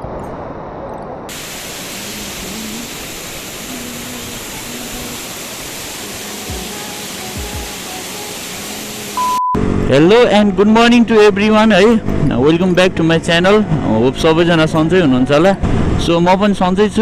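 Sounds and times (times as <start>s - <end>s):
waterfall roaring: 1.3s - 9.2s.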